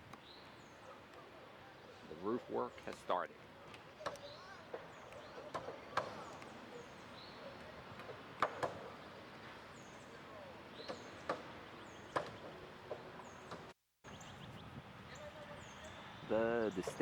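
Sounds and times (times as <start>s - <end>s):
small birds chirping: 0.0s - 17.0s
roofers knocking and banging: 7.6s - 13.7s.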